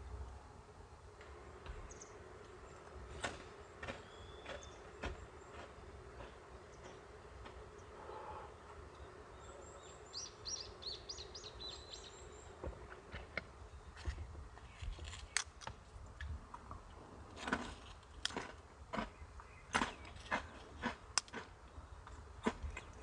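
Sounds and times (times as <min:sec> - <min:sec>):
bird chirping: 0:04.0 - 0:05.6, 0:07.8 - 0:12.6
clicks of objects handled: 0:14.8 - 0:15.8.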